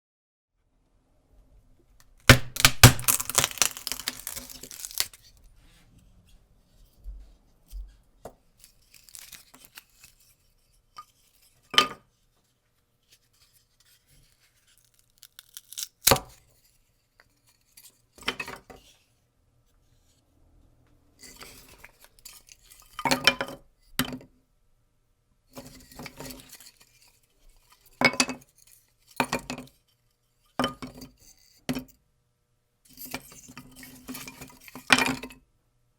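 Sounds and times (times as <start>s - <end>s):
sticks snapping: 2.3s - 5.2s.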